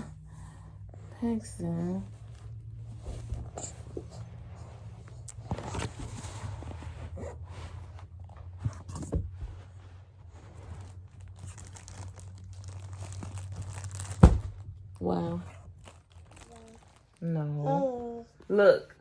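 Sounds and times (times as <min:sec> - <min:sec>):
rustling and crinkling handling: 0:00.8 - 0:18.5
sharp thump: 0:14.2 - 0:14.6.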